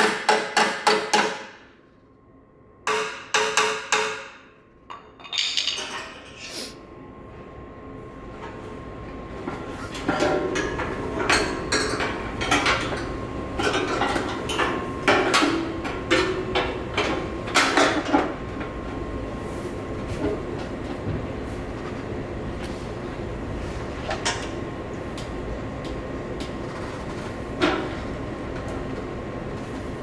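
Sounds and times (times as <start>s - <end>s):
metallic knocks and clanks: 4.9s - 6.4s.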